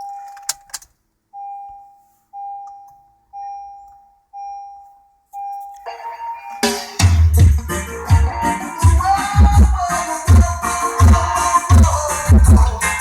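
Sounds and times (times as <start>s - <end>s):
dashboard warning chime: 0.0s - 0.7s, 1.3s - 9.1s
car stereo music: 5.5s - 13.0s.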